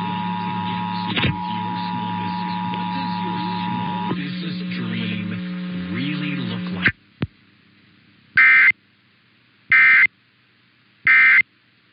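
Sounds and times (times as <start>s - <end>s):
broadcast program audio: 0.0s - 7.0s
steady hum: 0.0s - 11.9s
data tone bursts: 8.4s - 8.7s, 9.7s - 10.1s, 11.1s - 11.4s.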